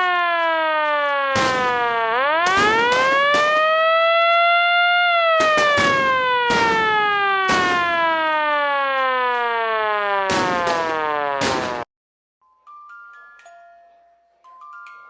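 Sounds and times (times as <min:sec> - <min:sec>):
rising and falling alarm siren: 0:00.0 - 0:11.9
sharp crackling hits: 0:01.3 - 0:03.8, 0:05.4 - 0:08.1.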